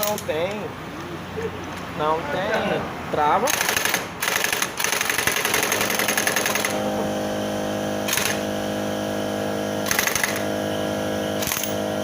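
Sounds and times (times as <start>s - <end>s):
impact wrench rattling: 3.5s - 6.9s, 8.1s - 8.6s, 9.8s - 10.6s, 11.4s - 12.0s
steady mechanical hum: 5.7s - 12.0s.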